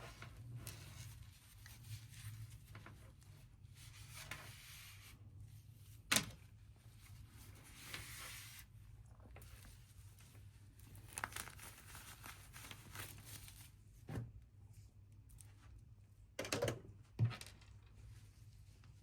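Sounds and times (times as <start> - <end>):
rustling and crinkling: 0.0 - 5.0, 6.8 - 14.4.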